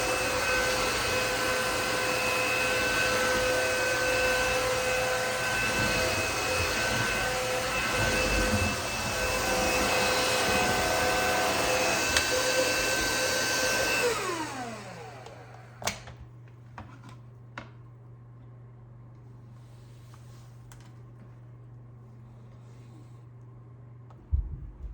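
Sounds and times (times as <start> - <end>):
vacuum cleaner whining: 0.0 - 16.2.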